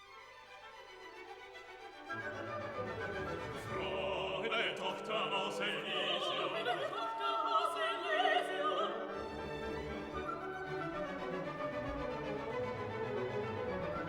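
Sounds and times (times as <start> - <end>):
orchestra playing: 0.6 - 5.2, 9.0 - 14.0
operatic voice singing: 2.7 - 9.2.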